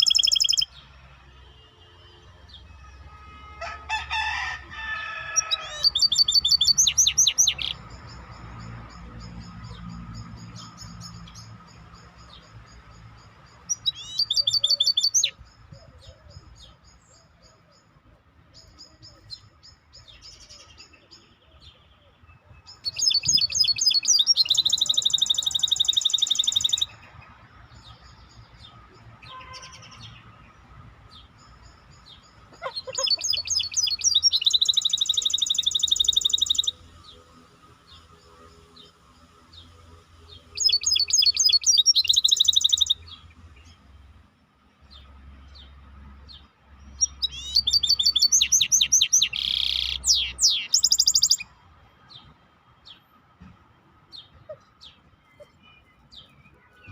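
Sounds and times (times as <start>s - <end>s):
songbird trilling: 0.0s - 0.8s, 5.3s - 17.7s, 22.7s - 27.1s, 31.6s - 36.8s, 40.3s - 43.2s, 47.0s - 51.4s.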